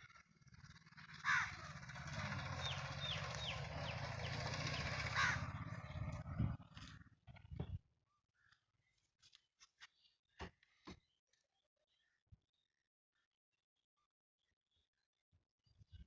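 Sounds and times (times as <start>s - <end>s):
crow cawing: 1.0s - 3.6s, 4.7s - 6.0s.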